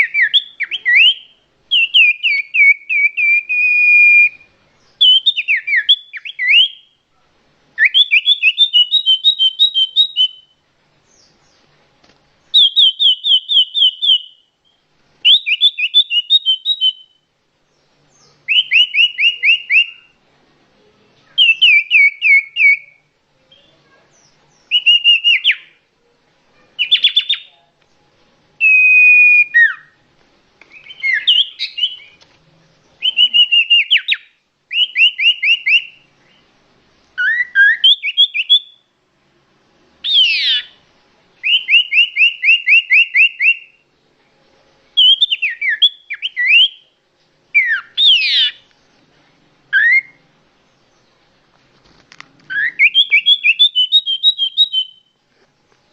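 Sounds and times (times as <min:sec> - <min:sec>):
bird whistling: 0:00.0 - 0:07.0, 0:07.8 - 0:10.6, 0:12.5 - 0:17.2, 0:18.2 - 0:20.2, 0:21.4 - 0:23.0, 0:24.7 - 0:25.8, 0:26.8 - 0:27.5, 0:28.6 - 0:30.0, 0:30.7 - 0:32.2, 0:33.0 - 0:36.1, 0:37.2 - 0:38.8, 0:40.0 - 0:40.8, 0:41.4 - 0:43.8, 0:45.0 - 0:46.9, 0:47.6 - 0:48.6, 0:49.7 - 0:50.2, 0:52.5 - 0:55.1.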